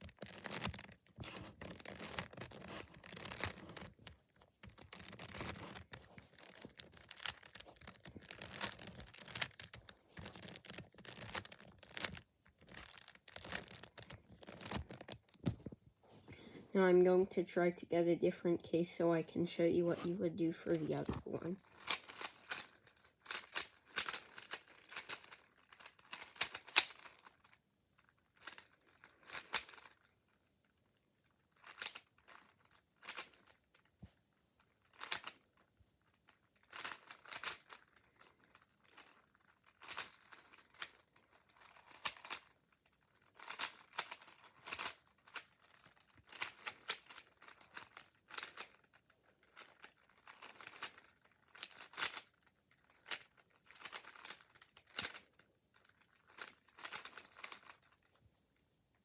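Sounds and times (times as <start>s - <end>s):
puzzle cube plastic clicks: 0.0s - 15.6s, 20.4s - 27.4s, 28.4s - 30.0s, 36.7s - 57.9s.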